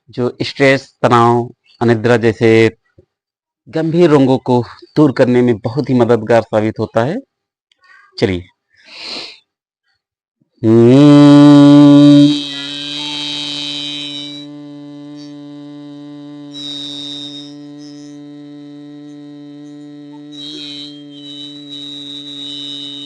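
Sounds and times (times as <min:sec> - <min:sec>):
person humming low note: 0:10.6 - 0:23.0.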